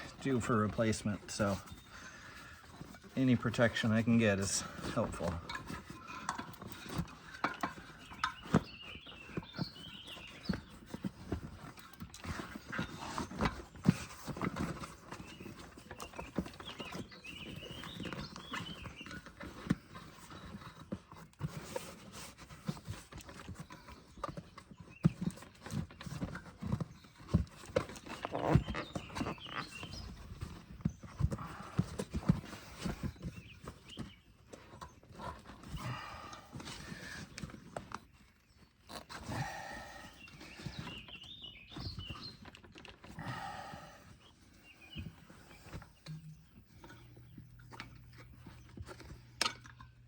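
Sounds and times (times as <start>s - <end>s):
rubber squeaks: 25.0s - 36.1s, 36.7s - 39.8s.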